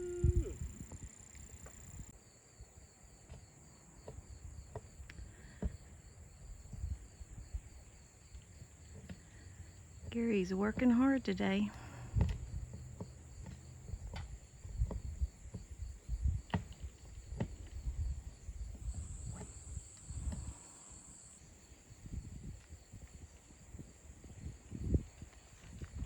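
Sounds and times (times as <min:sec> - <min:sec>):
high-pitched insect drone: 0:00.0 - 0:01.4.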